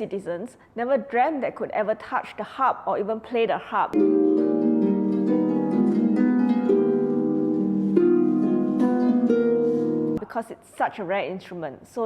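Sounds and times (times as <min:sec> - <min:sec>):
harp playing slow tune: 0:04.0 - 0:10.2.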